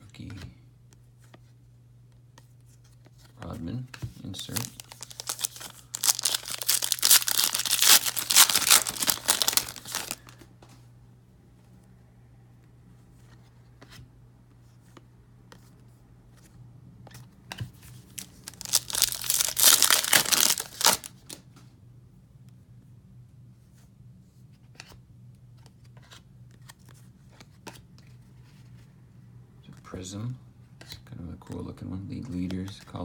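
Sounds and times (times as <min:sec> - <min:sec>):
cards clicking and rustling: 0:02.9 - 0:10.4, 0:17.5 - 0:21.4
foil pack ripping open: 0:04.4 - 0:10.3, 0:18.2 - 0:21.4.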